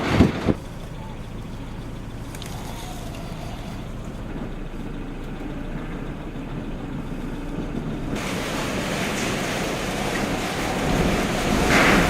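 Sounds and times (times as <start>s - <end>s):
hissing rush of wind: 7.8s - 12.0s.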